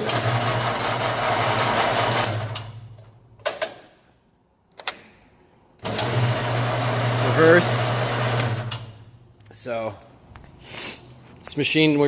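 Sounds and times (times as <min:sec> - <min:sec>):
machine motor humming: 0:05.8 - 0:08.9.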